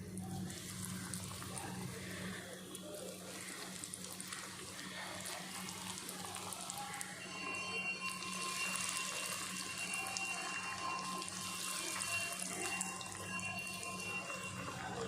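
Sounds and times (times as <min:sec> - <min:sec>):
deep-frying sizzle in oil: 0:00.0 - 0:15.0.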